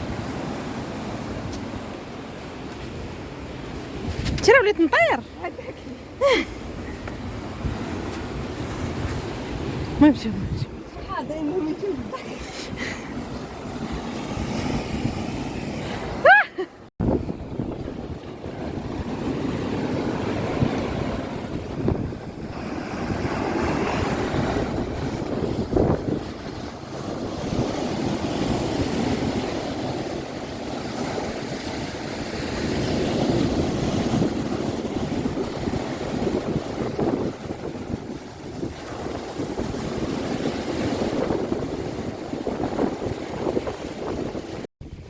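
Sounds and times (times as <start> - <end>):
surf washing on beach: 0.0 - 45.0
wind buffeting microphone: 2.7 - 16.3, 17.0 - 45.0.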